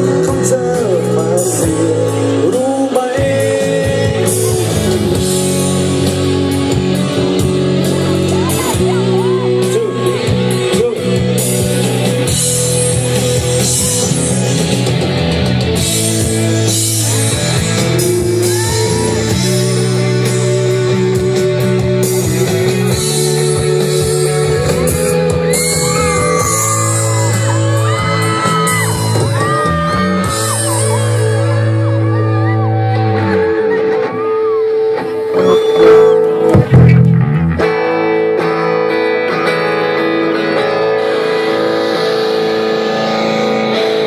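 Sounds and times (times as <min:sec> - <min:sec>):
person singing: 0:00.0 - 0:05.8
live rock band playing: 0:00.0 - 0:44.0
crowd yelling: 0:02.2 - 0:15.8, 0:16.8 - 0:20.5, 0:22.6 - 0:37.0.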